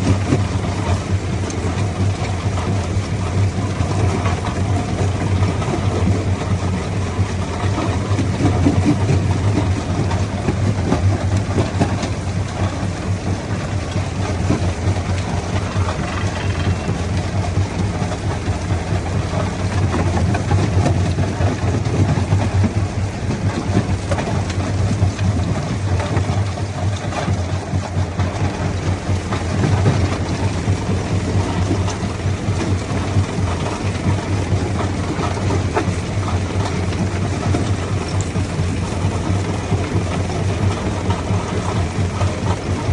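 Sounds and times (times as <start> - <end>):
jaw crusher humming: 9.8 - 25.2.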